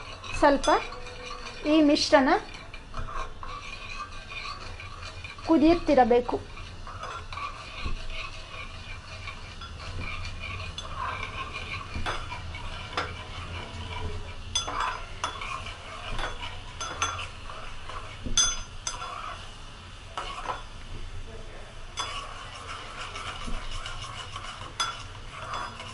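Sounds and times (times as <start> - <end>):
spoon scraping pan: 0.0 - 21.2, 21.8 - 25.9
spoon clinking on pan: 14.5 - 19.1, 22.0 - 22.6, 24.4 - 25.9.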